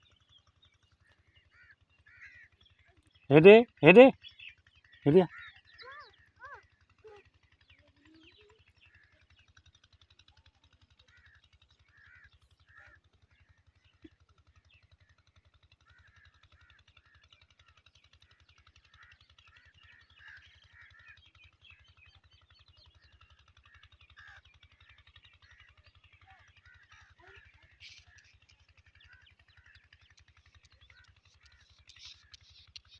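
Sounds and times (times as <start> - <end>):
birds chirping and calling: 0.0 - 9.8, 10.9 - 15.2, 15.8 - 32.9.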